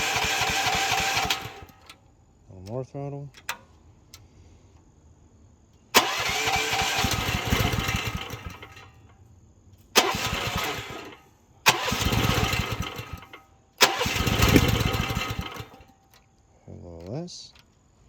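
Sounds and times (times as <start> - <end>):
small gasoline engine starting: 0.0 - 1.9, 5.9 - 9.1, 9.9 - 16.0.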